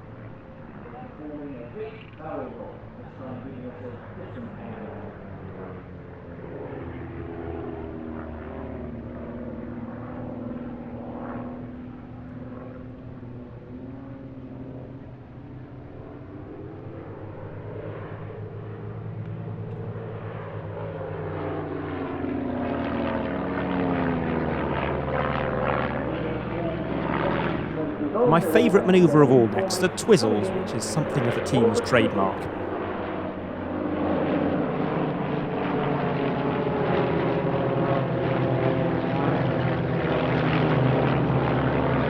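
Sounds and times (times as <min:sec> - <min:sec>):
aircraft engines droning overhead: 0:28.6 - 0:32.6.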